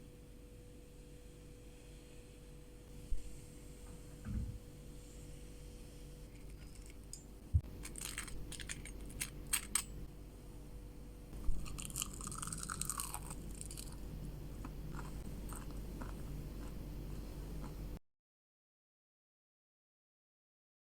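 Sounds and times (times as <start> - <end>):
crunching fried snack: 11.5 - 14.0.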